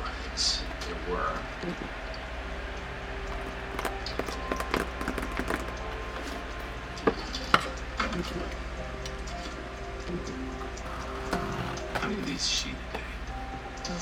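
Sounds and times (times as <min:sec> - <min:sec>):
hands handling stationery packaging: 0:03.3 - 0:06.7, 0:10.7 - 0:13.3.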